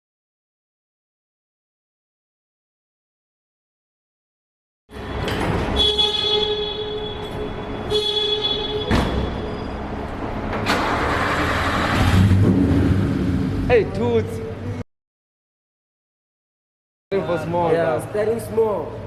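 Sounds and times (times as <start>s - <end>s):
street traffic noise: 4.9s - 14.8s, 17.1s - 19.0s
vehicle horn blasts: 5.0s - 9.6s.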